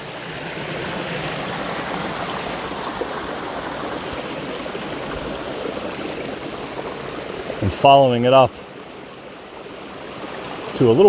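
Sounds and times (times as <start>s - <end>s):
stream flowing over small falls: 0.0s - 11.0s.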